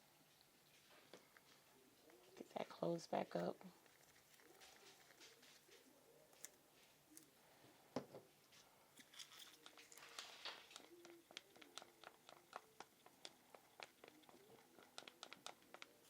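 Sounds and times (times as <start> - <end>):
stir stick scraping in mixing cup: 9.0 - 16.0.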